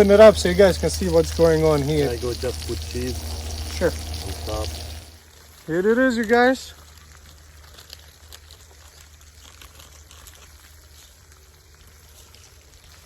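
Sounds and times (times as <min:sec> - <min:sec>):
low rumble: 0:00.0 - 0:05.2
burgers sizzling and crackling: 0:00.0 - 0:13.0.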